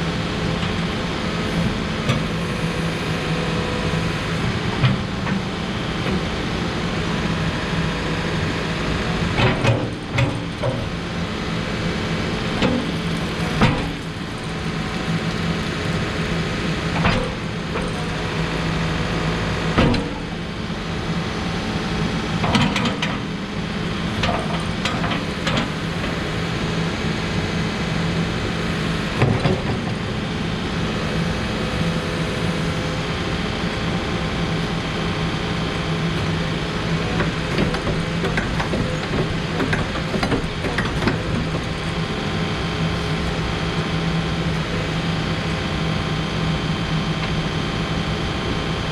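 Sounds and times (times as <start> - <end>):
diesel engine running: 0.0 - 48.9
machine clunks and knocks: 9.3 - 11.0, 12.5 - 14.2, 17.0 - 18.2, 19.7 - 20.4, 22.4 - 23.3, 24.2 - 26.3, 29.0 - 30.2, 37.1 - 42.0.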